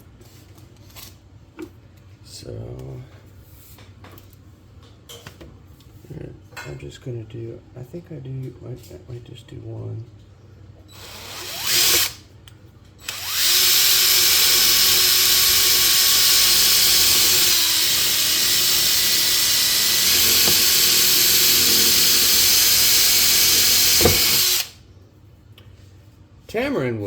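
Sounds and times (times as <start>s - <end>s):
power drill boring through wood: 10.9s - 12.2s, 13.0s - 24.8s.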